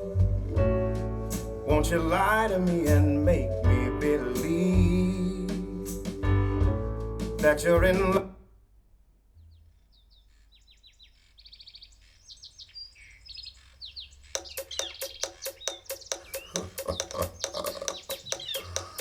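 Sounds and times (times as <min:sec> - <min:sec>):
birdsong through speakers: 0:09.4 - 0:19.0.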